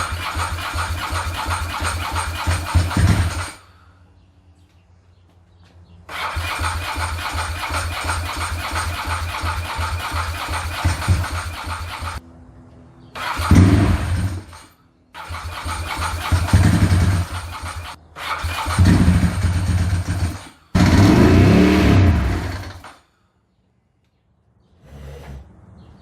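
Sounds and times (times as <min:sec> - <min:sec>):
motorcycle engine cranking and sputtering: 0:00.0 - 0:03.6, 0:06.1 - 0:12.2, 0:13.2 - 0:23.0.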